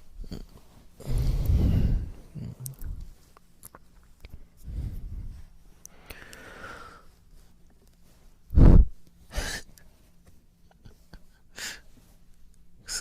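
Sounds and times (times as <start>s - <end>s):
man breathing close to microphone: 1.0s - 3.2s, 4.3s - 7.5s, 8.5s - 9.8s.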